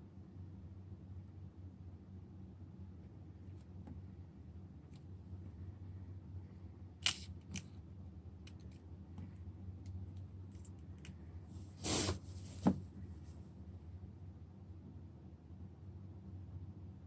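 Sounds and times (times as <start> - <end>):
low electrical hum: 0.0 - 17.0
brief rustle or scrape: 11.7 - 12.8.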